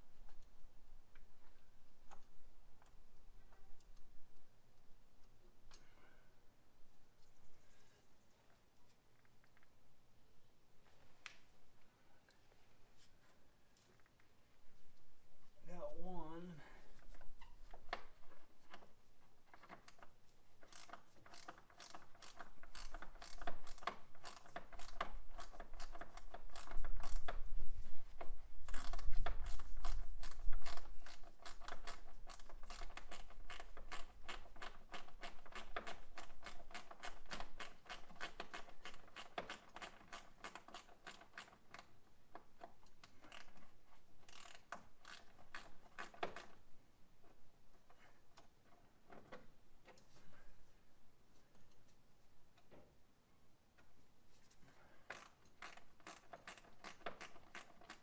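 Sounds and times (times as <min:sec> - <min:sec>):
ratchet wrench clicking: 0:20.6 - 0:27.3, 0:44.3 - 0:46.5, 0:55.1 - 0:58.0.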